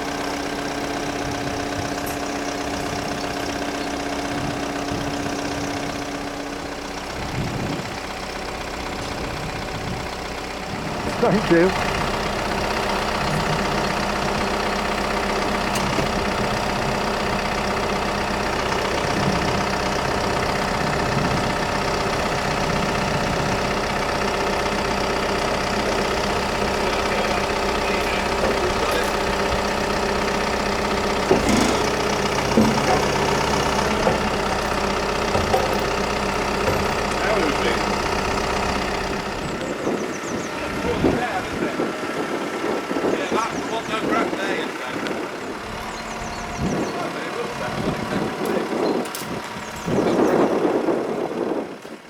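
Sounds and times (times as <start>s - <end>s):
engine idling: 0.0s - 52.0s
short knocks: 31.1s - 38.2s.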